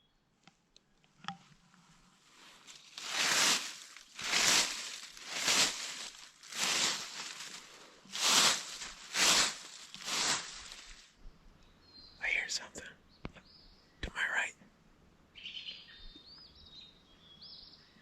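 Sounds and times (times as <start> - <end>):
dry leaves rustling: 2.2 - 11.1.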